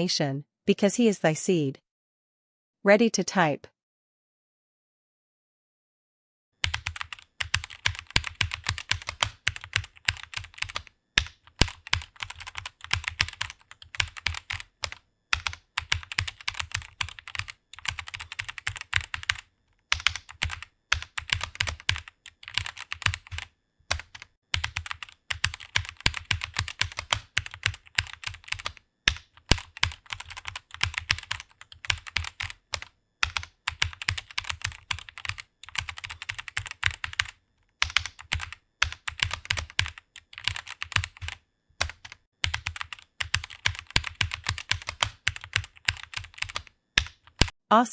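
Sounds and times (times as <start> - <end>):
computer keyboard typing: 6.6 - 47.6.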